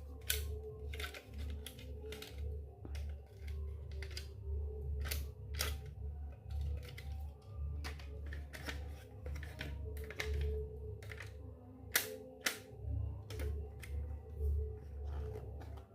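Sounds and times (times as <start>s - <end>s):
low pulsing hum: 12.7s - 15.9s.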